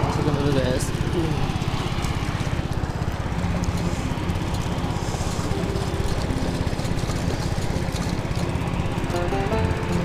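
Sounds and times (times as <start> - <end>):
small engine chugging: 0.0 - 10.0.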